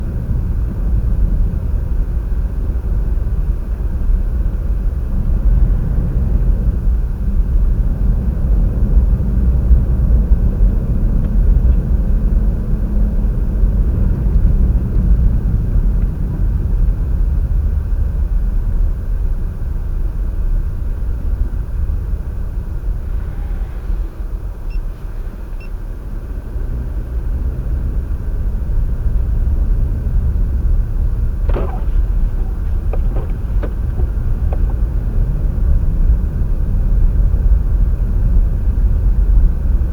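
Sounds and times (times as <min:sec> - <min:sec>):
wind buffeting microphone: 0:28.1 - 0:39.9.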